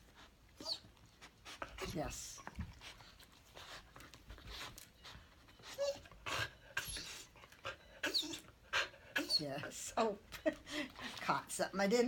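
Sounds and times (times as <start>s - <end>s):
dog panting: 0.0s - 11.5s.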